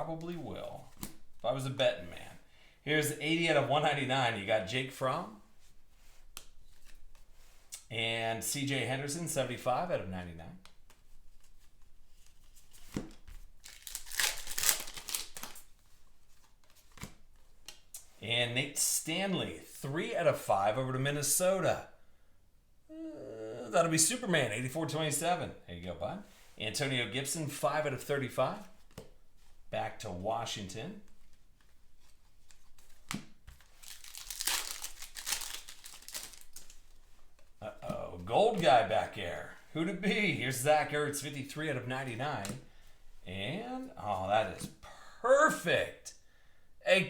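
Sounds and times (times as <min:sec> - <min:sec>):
plastic wrappers crinkling: 0:13.5 - 0:15.8, 0:32.4 - 0:37.6.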